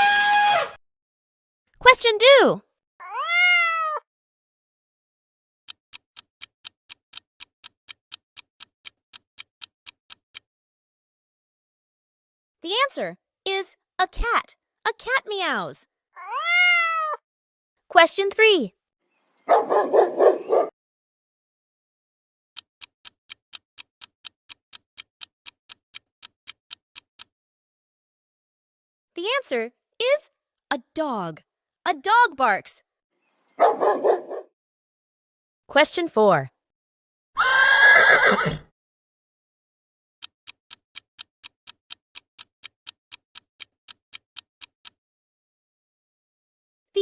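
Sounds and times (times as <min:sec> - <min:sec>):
clock ticking: 0:05.7 - 0:10.5, 0:22.6 - 0:27.3, 0:40.2 - 0:45.0.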